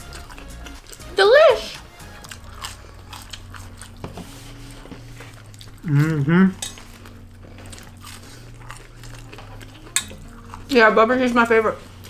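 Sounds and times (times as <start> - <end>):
steady low hum: 0.0 - 12.0
clicks and clinks of eating: 5.2 - 10.8
person humming mmm: 5.6 - 7.4.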